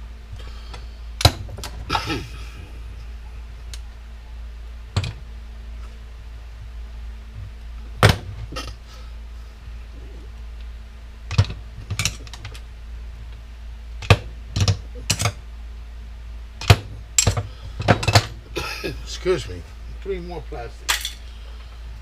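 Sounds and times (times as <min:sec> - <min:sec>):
steady low hum: 0:00.0 - 0:22.0
hard plastic parts clacking: 0:16.6 - 0:18.4.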